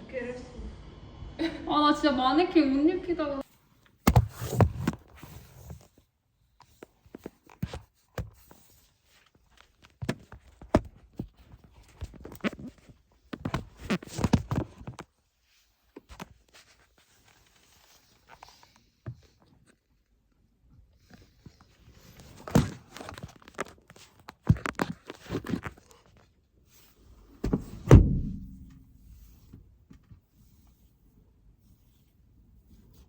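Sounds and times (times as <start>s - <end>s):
objects being handled: 21.0s - 33.0s.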